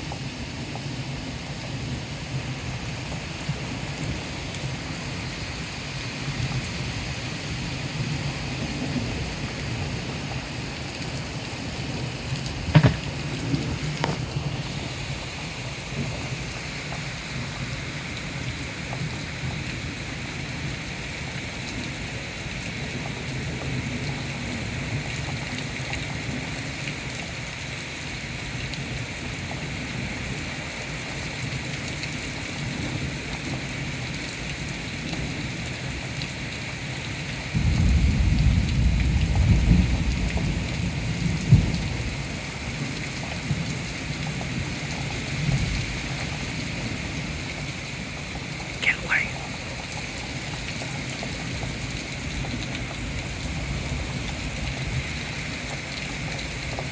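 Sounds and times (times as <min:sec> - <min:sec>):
steady rain hissing: 0:00.0 - 0:56.9
thunder rumbling and cracking: 0:37.6 - 0:42.2.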